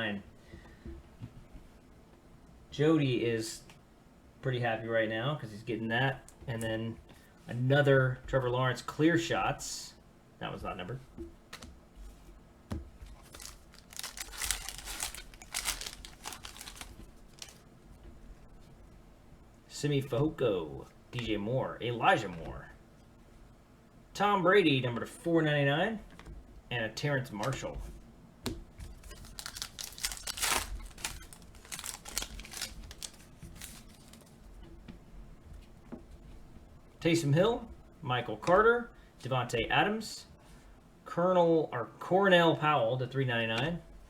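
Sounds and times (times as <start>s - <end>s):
foil wrapper tearing and crinkling: 13.2s - 17.6s, 29.0s - 34.2s.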